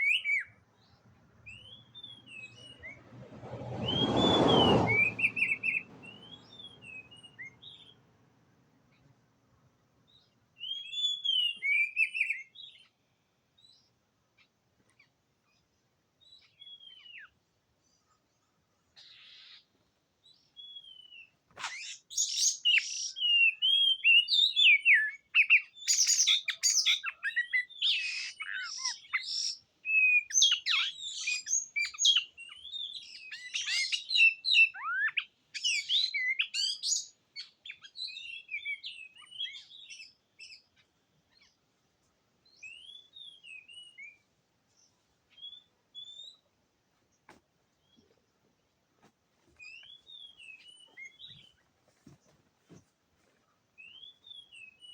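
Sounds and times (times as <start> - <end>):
bird singing whistles: 0.0 - 0.6, 1.5 - 3.0, 3.8 - 8.0, 10.6 - 12.9, 20.6 - 40.7, 42.5 - 44.2.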